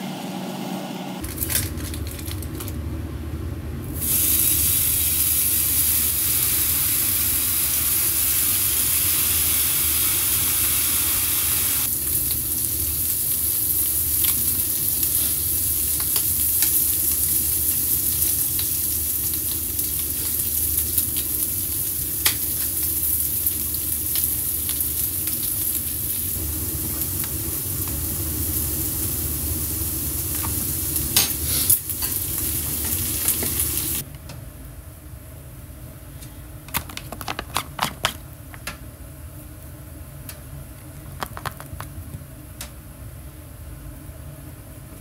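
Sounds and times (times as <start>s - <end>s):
food sizzling in a frying pan: 4.0s - 34.0s.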